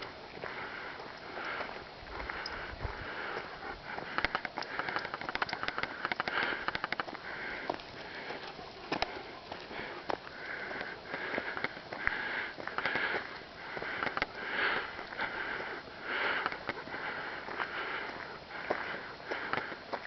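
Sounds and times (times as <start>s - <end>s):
hard rhythmic breathing: 0.0s - 20.0s
light clicks: 4.1s - 7.1s.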